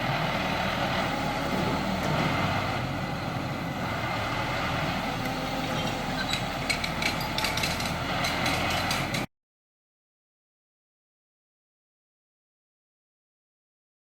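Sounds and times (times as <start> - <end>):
heavy engine running: 0.0 - 9.3
sharp clicks and knocks: 6.2 - 9.3.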